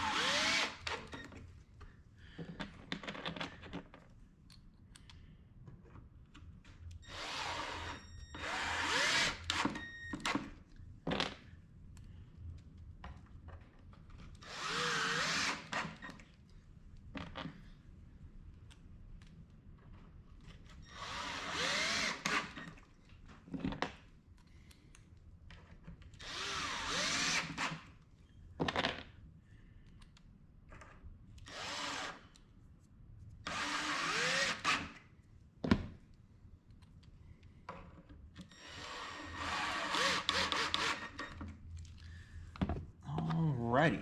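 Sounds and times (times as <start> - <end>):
power drill driving screws into wood: 0.0 - 1.2, 7.1 - 10.5, 14.4 - 16.1, 20.9 - 22.8, 26.2 - 27.9, 31.4 - 32.3, 33.4 - 35.0, 38.5 - 41.4.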